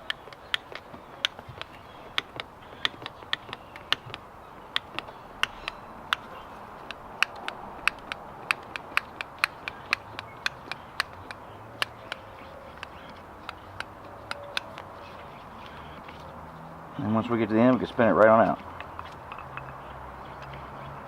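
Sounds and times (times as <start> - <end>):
hand ratchet clicking: 0.0 - 14.7.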